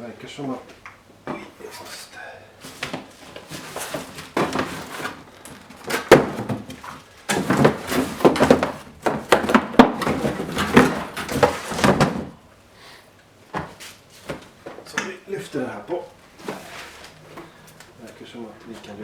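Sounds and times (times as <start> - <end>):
hard plastic parts clattering: 2.6 - 12.4.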